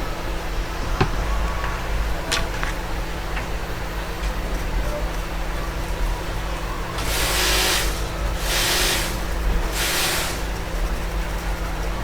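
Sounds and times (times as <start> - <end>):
hissing blasts of compressed gas: 6.9 - 10.7.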